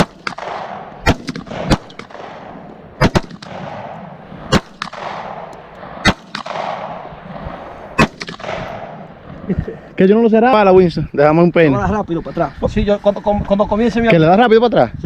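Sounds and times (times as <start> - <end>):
fainter distant gunshots: 0.0 - 10.0
gunshots with rolling echo: 0.0 - 11.4.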